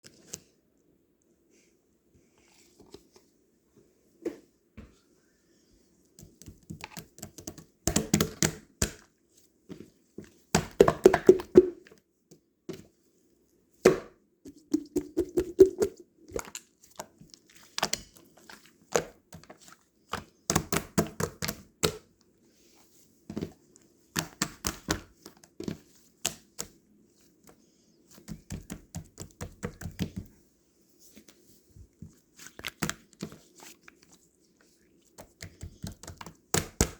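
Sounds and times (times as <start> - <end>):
pudding crackling and squishing: 14.5 - 22.0, 32.0 - 36.9.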